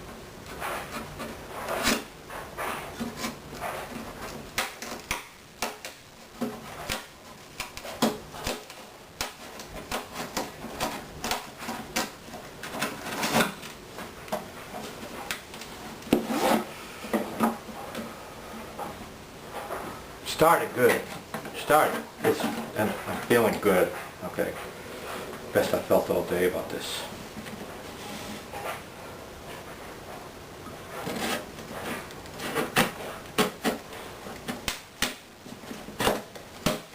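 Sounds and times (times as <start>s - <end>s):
tools scraping wood: 0.4s - 26.2s, 30.8s - 34.8s
hand tools clicking on wood: 2.9s - 16.4s.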